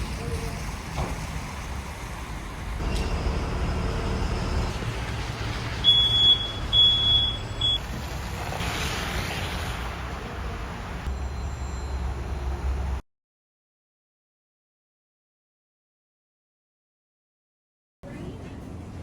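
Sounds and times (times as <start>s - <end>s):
high electronic beeps: 5.8s - 7.8s.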